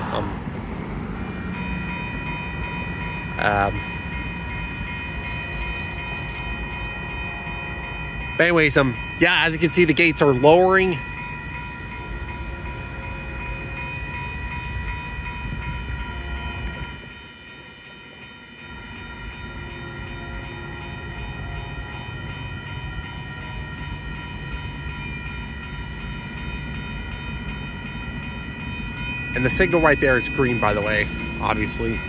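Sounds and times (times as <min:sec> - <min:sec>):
low rumble: 0:00.0 - 0:04.1
railroad crossing bells ringing: 0:00.0 - 0:32.0.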